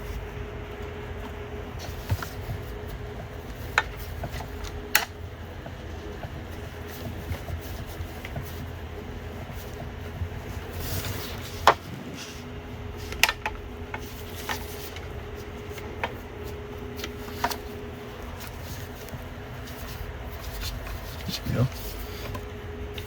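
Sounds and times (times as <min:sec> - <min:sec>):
low steady hum: 0:00.0 - 0:23.0.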